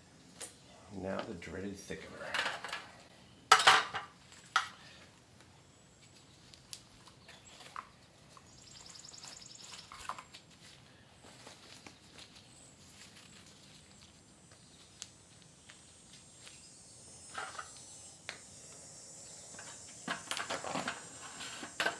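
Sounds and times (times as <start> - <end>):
containers clattering: 3.5 - 4.7.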